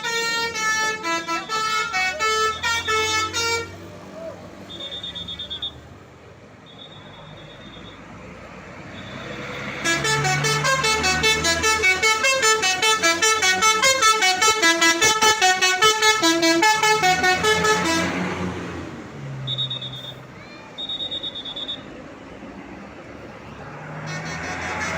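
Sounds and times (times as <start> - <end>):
musical bus horn tune: 0.0 - 3.8, 9.3 - 18.4, 24.0 - 24.9
vehicle engine rumble: 0.0 - 24.9.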